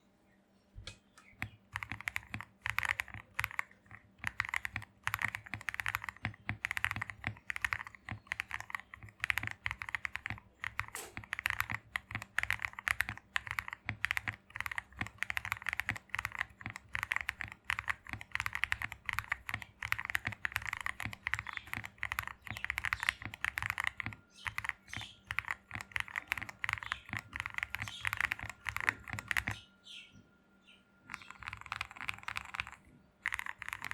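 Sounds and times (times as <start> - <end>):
fast mechanical keyboard typing: 1.2 - 29.6, 31.1 - 33.9.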